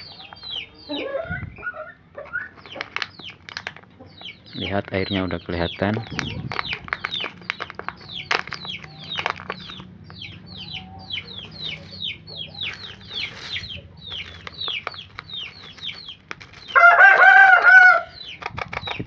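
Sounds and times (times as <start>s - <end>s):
chicks peeping: 0.0s - 19.0s
scattered clicks: 2.6s - 10.4s
rooster crowing: 16.8s - 18.2s.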